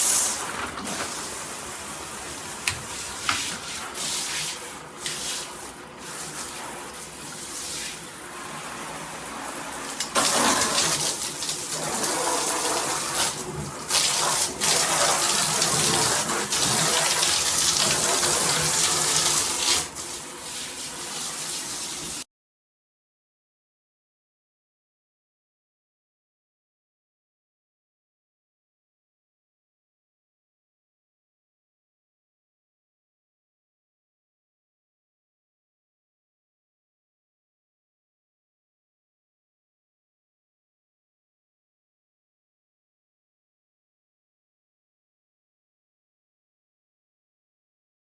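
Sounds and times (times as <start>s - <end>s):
water spraying from shower head: 0.0s - 22.2s.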